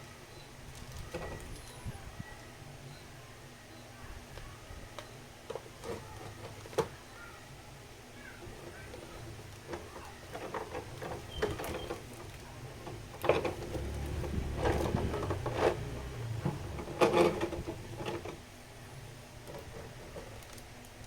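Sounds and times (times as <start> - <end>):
packaging rustling and scraping: 8.4 - 18.4, 19.4 - 20.7.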